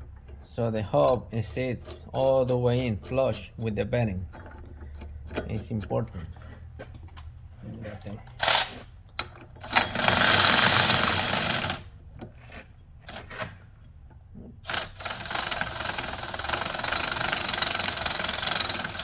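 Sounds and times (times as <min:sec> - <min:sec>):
impact wrench hammering: 0:09.6 - 0:11.9, 0:14.7 - 0:19.0.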